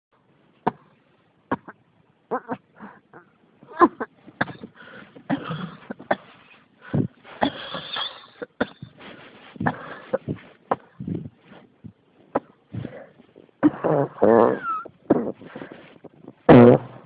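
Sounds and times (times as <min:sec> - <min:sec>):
person coughing hard: 0:03.7 - 0:06.4, 0:07.0 - 0:09.0, 0:09.6 - 0:11.0, 0:13.6 - 0:15.5.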